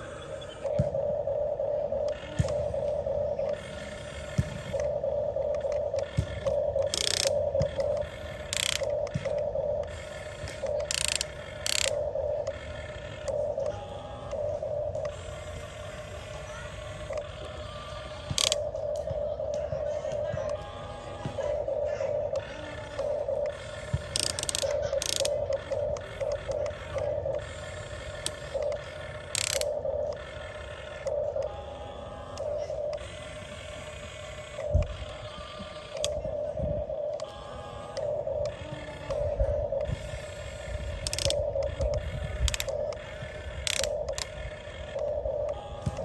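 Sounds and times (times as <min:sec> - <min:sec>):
small electric motors whirring: 0:00.0 - 0:46.0
gears rattling harshly: 0:05.7 - 0:09.3, 0:09.9 - 0:13.3, 0:22.4 - 0:31.1, 0:39.9 - 0:45.0.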